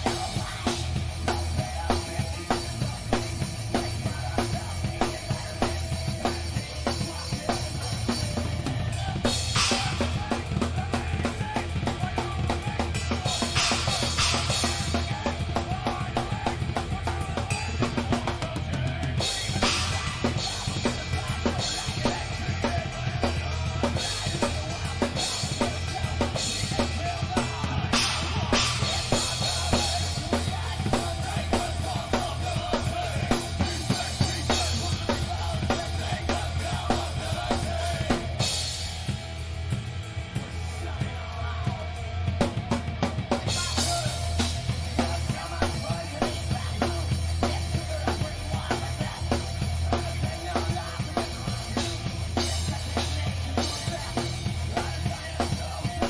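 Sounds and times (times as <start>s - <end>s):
rock band playing live: 0.0s - 56.0s
kick and snare drum strokes: 13.6s - 14.8s.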